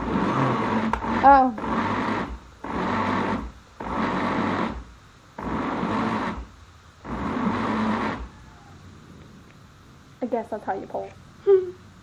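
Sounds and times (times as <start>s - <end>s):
electric blender pulsing: 0.0s - 8.5s.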